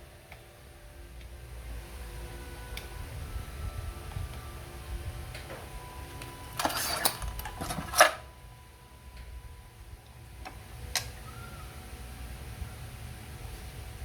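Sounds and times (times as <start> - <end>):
faint low hum: 0.0 - 14.0
small tools clicking and tapping: 6.2 - 8.2.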